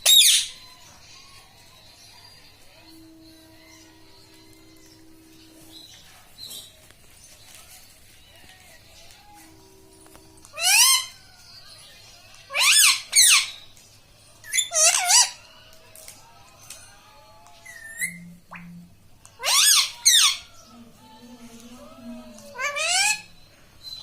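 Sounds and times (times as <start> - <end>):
parakeet squawking: 0.0 - 0.6, 10.4 - 11.2, 12.5 - 13.6, 14.4 - 15.4, 17.6 - 18.8, 19.4 - 20.6, 22.0 - 24.0.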